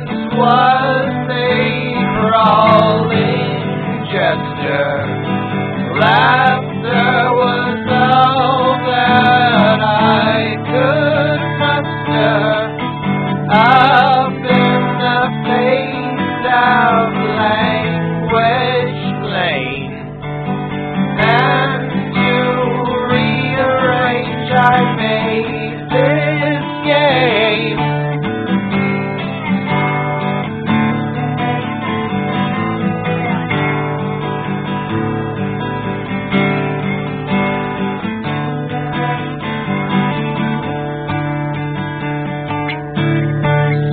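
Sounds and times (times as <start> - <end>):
person singing: 0.0 - 20.1, 21.2 - 28.1
acoustic guitar music: 0.0 - 43.9.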